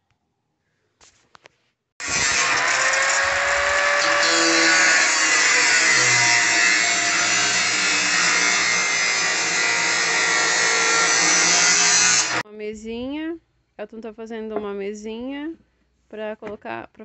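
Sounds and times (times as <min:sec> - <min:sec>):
electric power saw cutting: 0:02.0 - 0:12.4.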